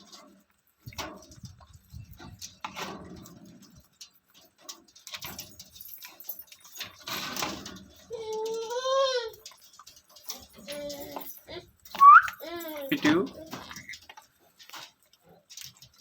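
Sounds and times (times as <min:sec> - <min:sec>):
parrot chirping and squawking: 0:11.9 - 0:13.0.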